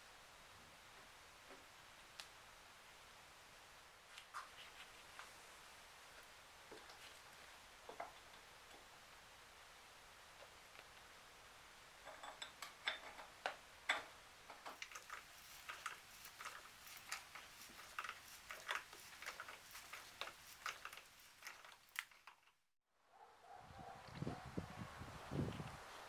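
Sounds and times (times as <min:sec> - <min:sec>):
light irregular clicks and taps: 0:12.1 - 0:22.5.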